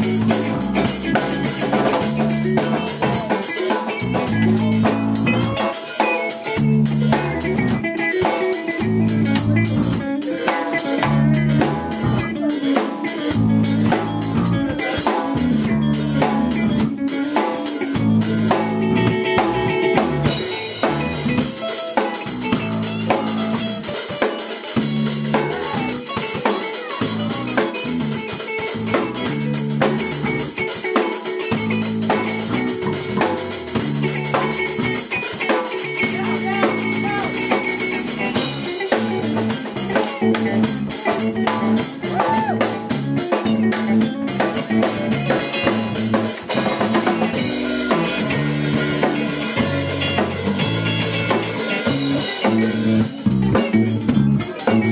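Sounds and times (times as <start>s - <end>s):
live rock band playing: 0.0s - 54.9s.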